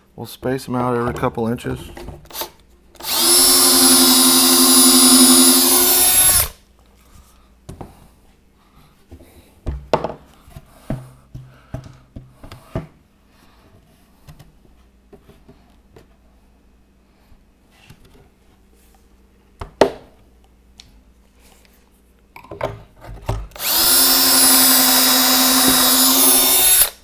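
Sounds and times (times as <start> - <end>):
cordless drill boring through plywood: 2.3 - 6.6, 23.6 - 27.0.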